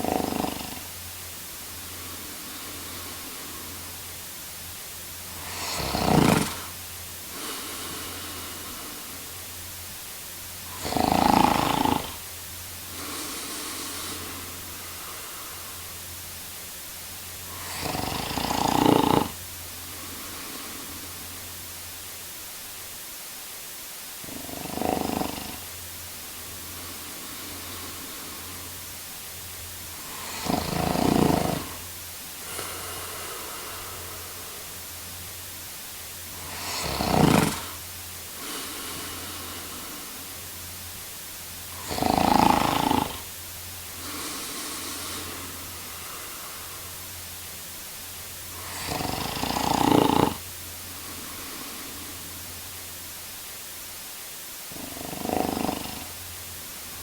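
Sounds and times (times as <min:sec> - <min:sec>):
man snoring: 0:00.0 - 0:01.0, 0:01.8 - 0:04.2, 0:05.3 - 0:09.4, 0:10.6 - 0:16.0, 0:17.4 - 0:21.5, 0:24.2 - 0:25.8, 0:26.4 - 0:29.0, 0:29.9 - 0:35.0, 0:36.2 - 0:40.5, 0:41.7 - 0:47.1, 0:48.5 - 0:52.4, 0:54.7 - 0:56.3
steady background hiss: 0:00.0 - 0:57.0
quiet breath out: 0:29.9 - 0:35.0, 0:36.3 - 0:40.8, 0:43.9 - 0:47.2, 0:50.8 - 0:52.7.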